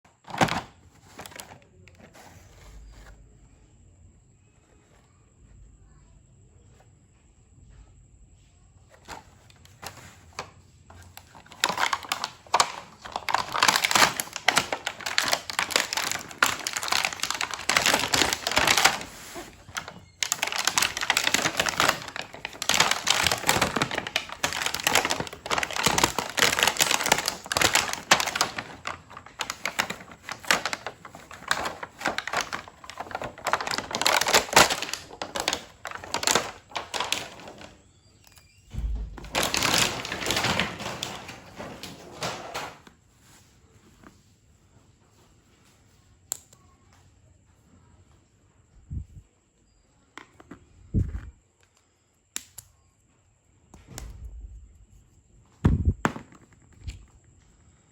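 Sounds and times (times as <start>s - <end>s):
packaging crinkling: 0.1s - 3.1s, 8.9s - 42.7s
small plastic pieces clicking: 11.4s - 37.7s.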